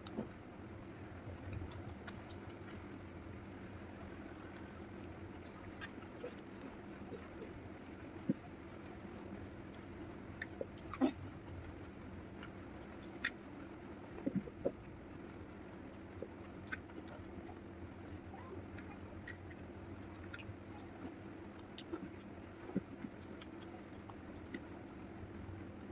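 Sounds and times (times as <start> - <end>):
steady low hum: 0.0 - 25.9
person chewing food: 15.7 - 25.9.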